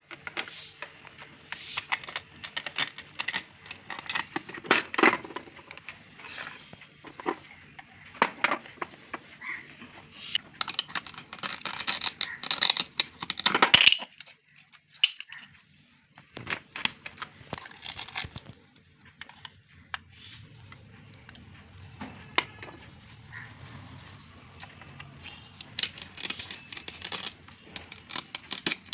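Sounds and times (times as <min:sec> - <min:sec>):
packaging crinkling and tearing: 0:01.8 - 0:04.9, 0:10.5 - 0:15.2, 0:16.4 - 0:18.6, 0:24.6 - 0:28.9
plastic toy clicks: 0:25.0 - 0:28.9.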